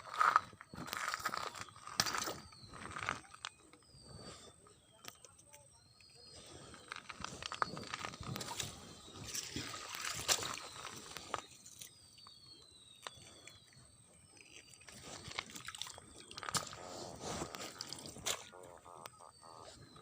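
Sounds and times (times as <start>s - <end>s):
whistled bird calls: 0.1s - 17.7s
water sloshing and splashing: 7.5s - 11.9s, 14.3s - 18.7s.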